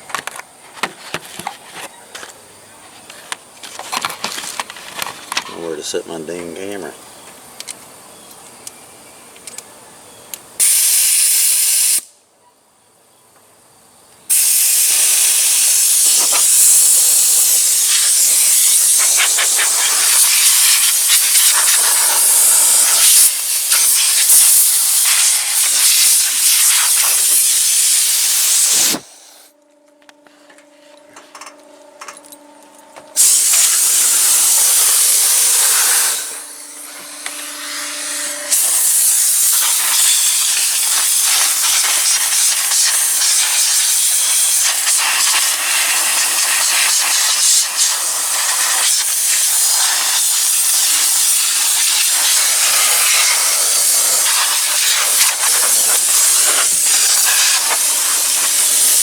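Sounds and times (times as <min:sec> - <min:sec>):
pressurised spray hissing: 0:10.6 - 0:12.1, 0:14.3 - 0:29.5, 0:33.2 - 0:59.0
faint steady hum: 0:27.8 - 0:40.8.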